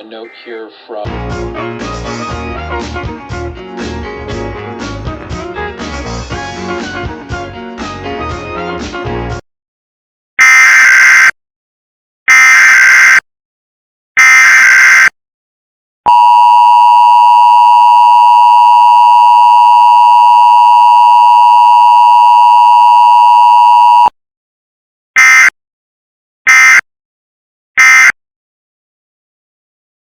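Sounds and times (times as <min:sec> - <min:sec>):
data tone bursts: 0:16.1 - 0:24.1
two-tone attention signal: 0:16.1 - 0:24.1.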